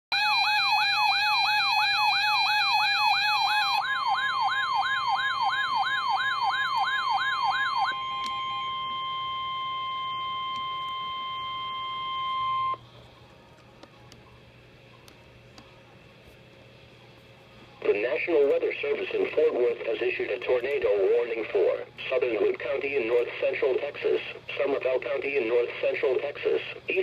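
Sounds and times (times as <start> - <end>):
wailing alarm tone: 0.1 - 12.8.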